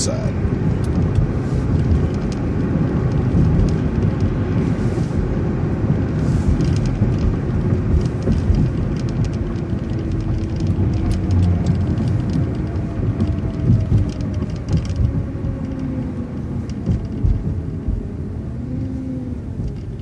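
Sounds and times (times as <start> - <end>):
bus engine and road rumble: 0.0 - 20.0
small rattles clicking: 6.1 - 18.1.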